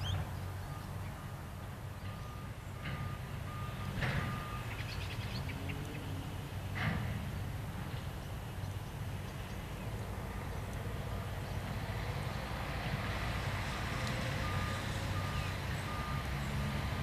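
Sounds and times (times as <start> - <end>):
diesel engine humming: 0.0 - 17.0
reversing alarm beeping: 2.1 - 4.7, 14.4 - 16.4.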